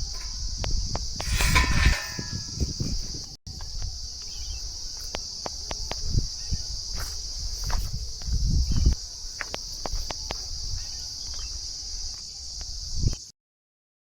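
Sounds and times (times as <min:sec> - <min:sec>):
high-pitched insect chirring: 0:00.0 - 0:13.3.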